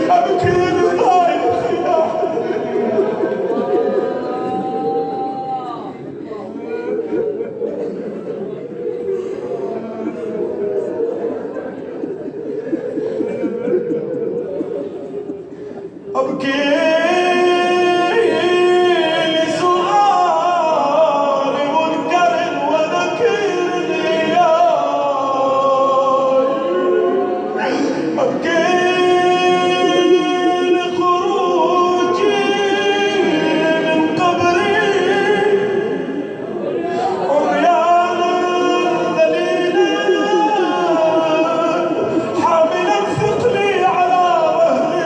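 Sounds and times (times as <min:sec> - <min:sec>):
man chanting unaccompanied: 0:00.0 - 0:07.8, 0:16.1 - 0:45.0.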